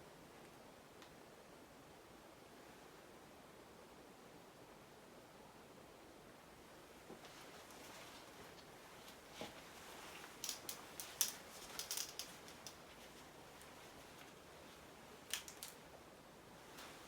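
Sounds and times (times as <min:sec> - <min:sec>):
objects being handled clicking: 0:10.2 - 0:12.9, 0:15.3 - 0:15.8.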